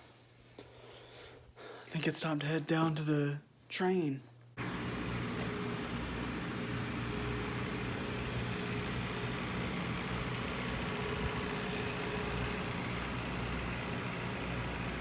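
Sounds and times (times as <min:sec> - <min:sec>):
car engine and road noise: 0:04.6 - 0:15.0.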